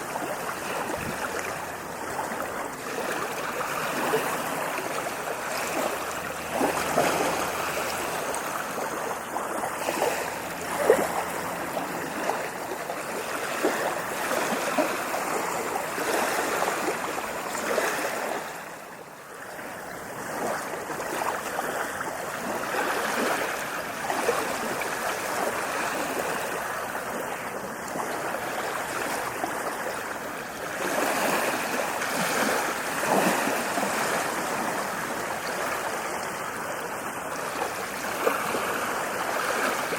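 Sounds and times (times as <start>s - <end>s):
sharp water splashes: 0.0s - 18.7s
ocean waves washing in: 0.0s - 39.9s.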